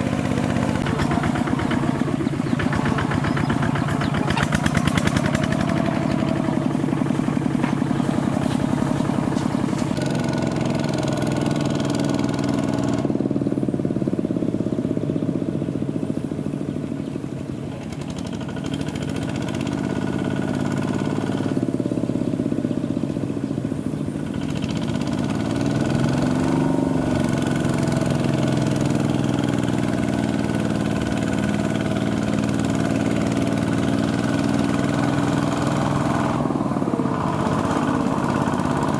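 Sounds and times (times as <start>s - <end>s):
tractor engine running: 0.0s - 38.9s.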